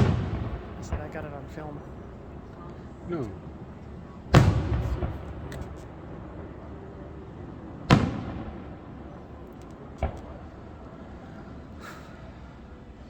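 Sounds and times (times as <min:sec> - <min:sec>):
rumbling echo and crackle: 0:00.0 - 0:11.0
firework shells booming: 0:00.0 - 0:11.2.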